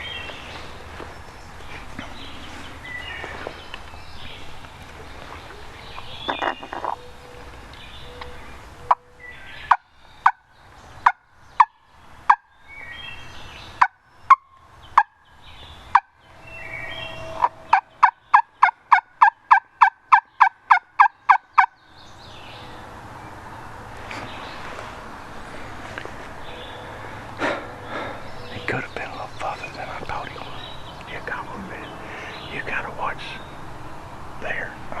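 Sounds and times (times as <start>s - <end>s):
turkey call yelping: 6.2s - 7.2s, 17.0s - 21.7s.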